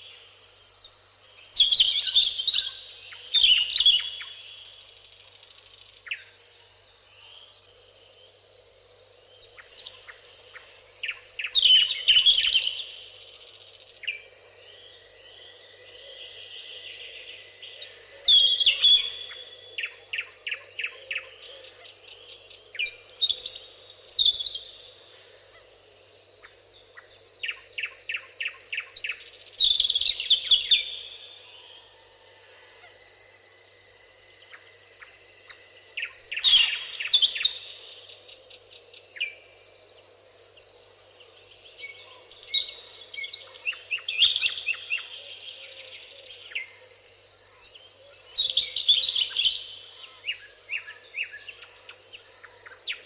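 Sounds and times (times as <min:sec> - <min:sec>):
songbirds singing: 0:00.0 - 0:53.0.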